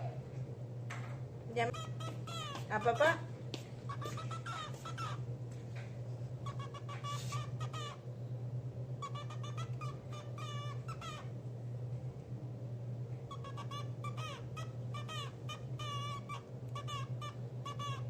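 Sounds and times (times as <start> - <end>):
steady low hum: 0.0 - 18.0
cockatiel chirping: 1.7 - 3.2, 3.9 - 5.2, 6.4 - 8.0, 9.0 - 11.3, 13.3 - 18.0.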